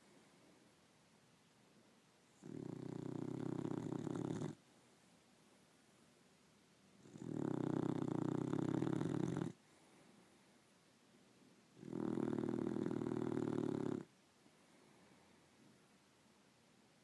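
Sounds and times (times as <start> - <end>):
snoring: 2.4 - 4.6, 7.0 - 9.6, 11.8 - 14.1.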